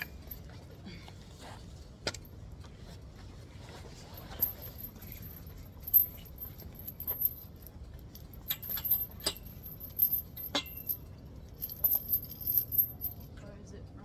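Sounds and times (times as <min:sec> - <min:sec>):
small metal pieces jingling: 0:04.2 - 0:13.3.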